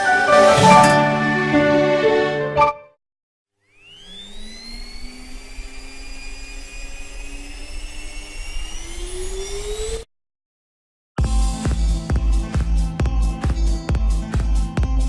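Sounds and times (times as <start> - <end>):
vacuum cleaner motor whine: 3.6 - 10.1.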